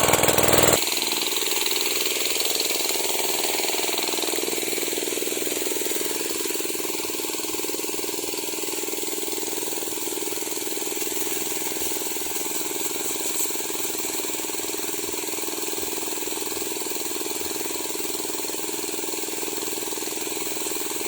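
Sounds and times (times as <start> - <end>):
power sprayer engine running: 0.0 - 0.8.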